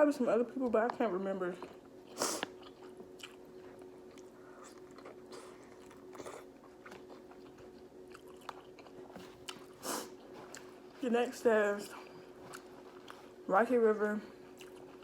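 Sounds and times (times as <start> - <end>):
chewing and biting food: 1.5 - 11.0, 11.9 - 13.4, 14.4 - 15.0.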